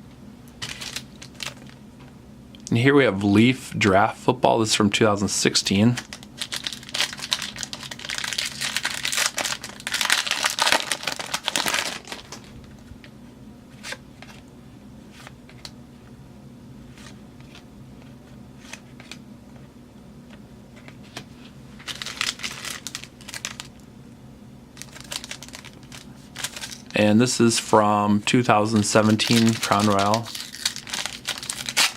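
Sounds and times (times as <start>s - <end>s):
wrapper tearing and crinkling: 0.6s - 1.8s, 5.9s - 12.5s, 21.8s - 23.8s, 24.8s - 27.0s, 28.7s - 31.9s
cards being handled: 16.9s - 19.6s, 24.8s - 27.0s, 28.6s - 31.9s.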